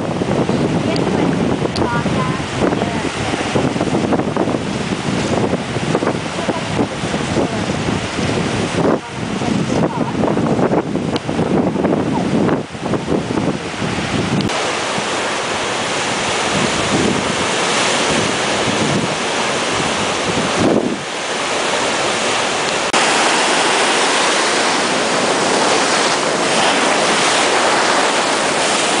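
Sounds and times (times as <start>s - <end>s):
surf breaking on a beach: 0.0s - 29.0s
wind buffeting the microphone: 0.0s - 29.0s.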